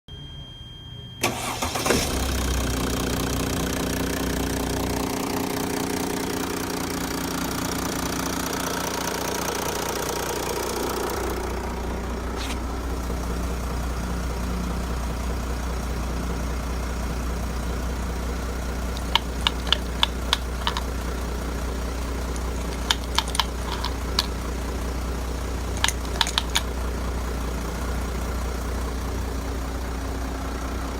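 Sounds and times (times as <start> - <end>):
diesel engine starting and idling: 1.2 - 30.9
sharp clicks: 19.0 - 20.9, 22.3 - 24.4, 25.7 - 26.7.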